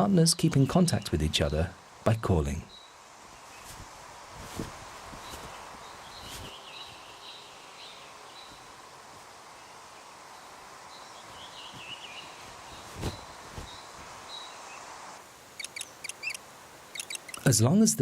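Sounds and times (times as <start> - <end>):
faint forest ambience: 0.0 - 18.0
high wavering bird calls: 15.5 - 17.5.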